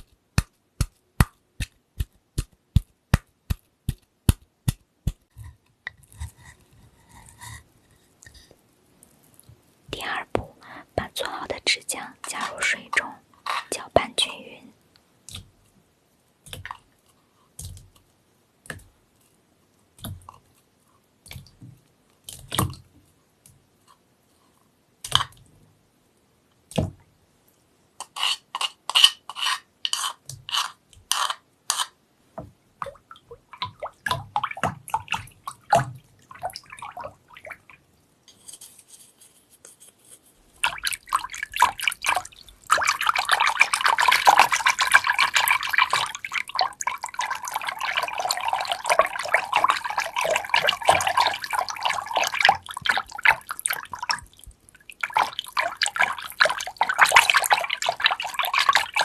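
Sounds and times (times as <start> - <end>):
drips and splashes: 32.8 - 37.8, 40.6 - 59.0.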